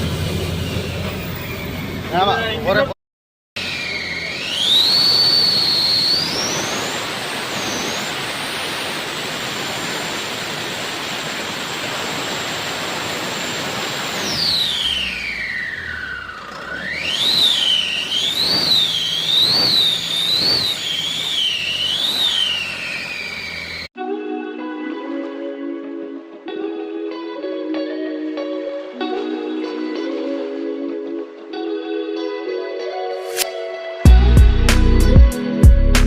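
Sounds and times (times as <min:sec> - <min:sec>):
truck diesel engine revving: 0:00.0 - 0:02.7, 0:03.6 - 0:23.9
turbocharger whistling: 0:00.0 - 0:02.9, 0:03.6 - 0:24.0.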